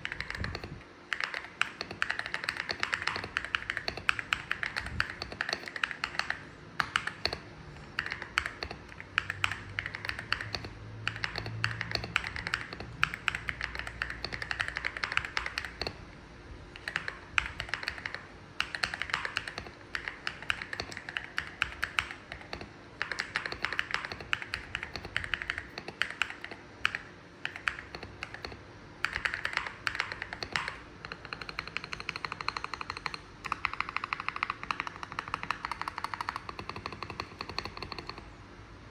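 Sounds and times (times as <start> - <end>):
mechanical keyboard typing: 0.0 - 16.1, 16.7 - 38.3.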